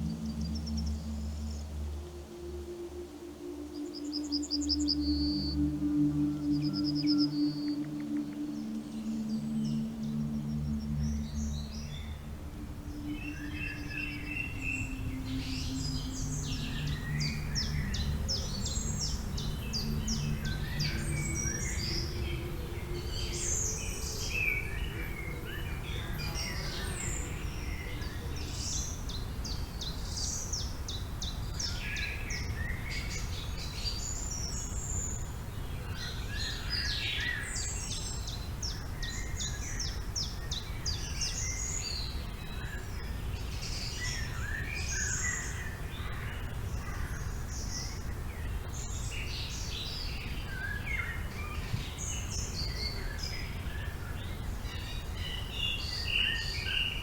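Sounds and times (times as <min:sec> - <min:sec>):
faint low hum: 0:00.0 - 0:57.0
low rumble of wind: 0:00.0 - 0:57.0
songbirds chirping and trilling: 0:00.0 - 0:57.0.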